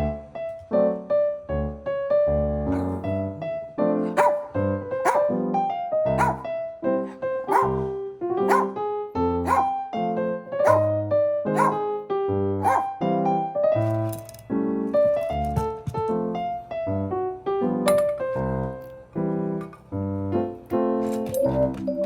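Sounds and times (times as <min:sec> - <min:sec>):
keyboard music: 0:00.0 - 0:14.2, 0:19.3 - 0:22.0
dog barking: 0:02.7 - 0:03.2, 0:04.0 - 0:05.3, 0:06.1 - 0:08.8, 0:09.4 - 0:09.8, 0:10.6 - 0:10.9, 0:11.5 - 0:11.8, 0:12.6 - 0:13.0.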